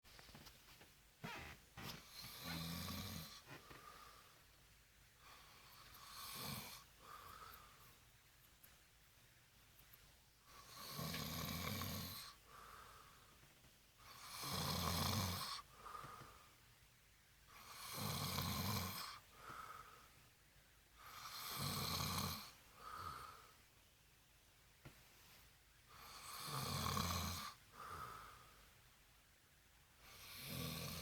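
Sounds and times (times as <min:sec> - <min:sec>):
man snoring heavily: 0:02.2 - 0:03.4, 0:06.0 - 0:06.8, 0:10.6 - 0:12.4, 0:14.1 - 0:15.6, 0:17.6 - 0:19.2, 0:21.1 - 0:22.5, 0:26.0 - 0:27.6, 0:30.1 - 0:31.0.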